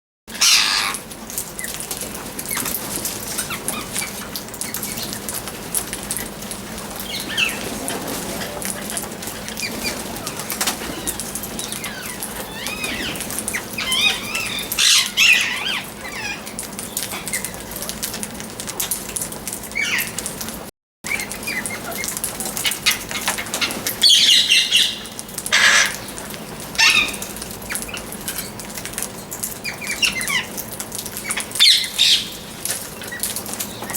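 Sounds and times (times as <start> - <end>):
parrot chirping: 0.4 - 1.0, 7.0 - 7.7, 8.7 - 17.6, 22.7 - 26.1, 26.8 - 28.6, 29.6 - 30.5, 31.2 - 33.2.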